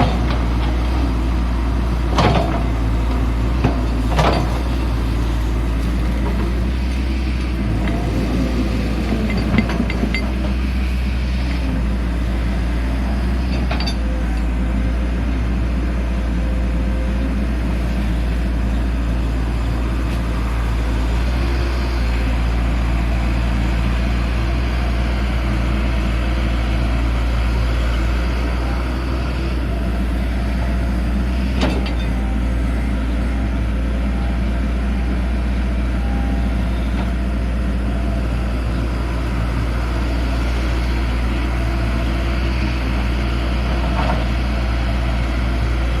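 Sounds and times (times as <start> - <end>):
excavator diesel engine running: 0.0 - 46.0.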